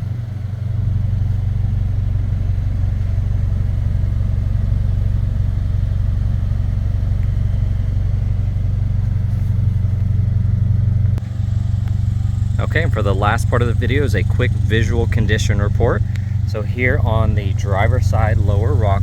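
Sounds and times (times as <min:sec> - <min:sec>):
car engine idling: 0:00.0 - 0:19.0
click: 0:16.1 - 0:16.3.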